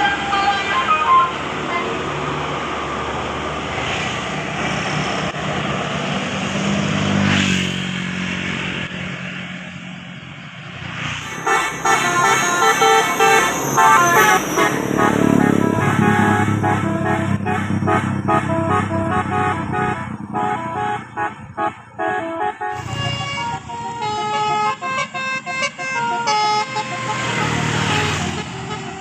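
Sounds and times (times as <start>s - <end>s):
bus musical multi-tone horn: 0.0s - 2.2s, 11.2s - 29.0s
bus engine passing: 0.0s - 29.0s
road traffic: 0.0s - 29.0s.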